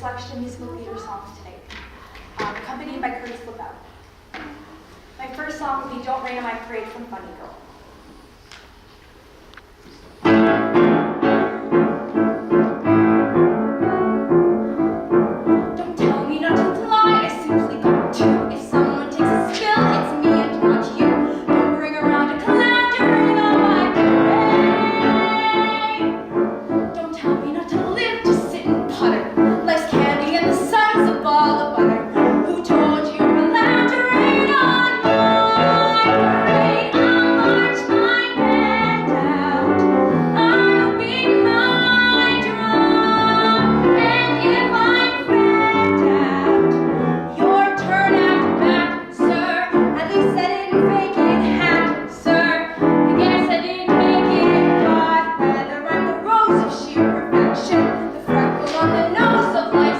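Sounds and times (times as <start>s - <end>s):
piano accompaniment: 10.2s - 59.9s
woman singing: 15.6s - 26.2s, 26.8s - 59.9s.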